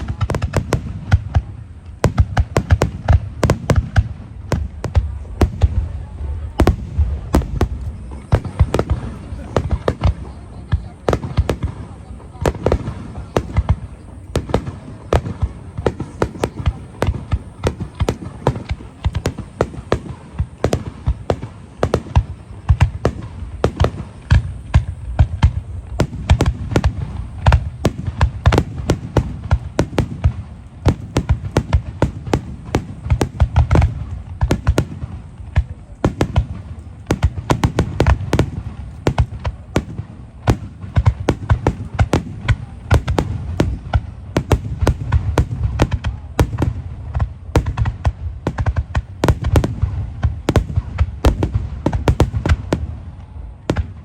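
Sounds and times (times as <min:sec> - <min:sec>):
fireworks bursts and crackling: 0:00.0 - 0:54.0.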